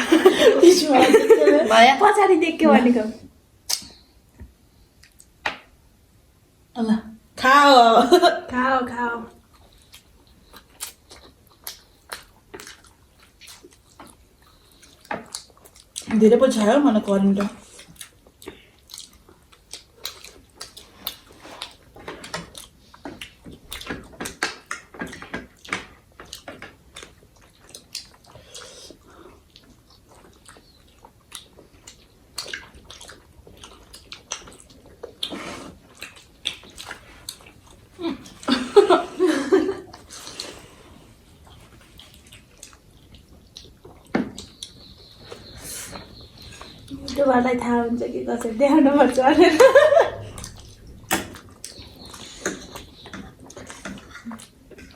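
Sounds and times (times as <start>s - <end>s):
mouth smacking clicks: 3.7s - 4.0s
wet chewing: 9.4s - 16.2s, 17.3s - 38.6s, 39.3s - 47.4s, 48.3s - 54.9s.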